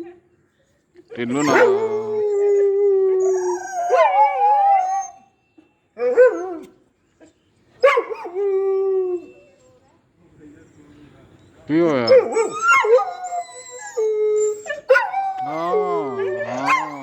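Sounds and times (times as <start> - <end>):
dog howling: 1.3 - 5.2, 12.0 - 17.0.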